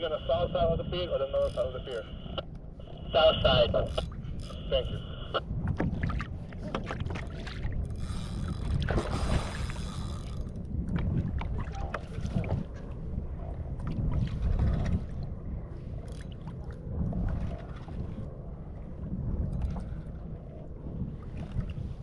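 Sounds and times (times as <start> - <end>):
wind buffeting microphone: 0.0 - 22.0
water splashing against hull: 0.1 - 22.0.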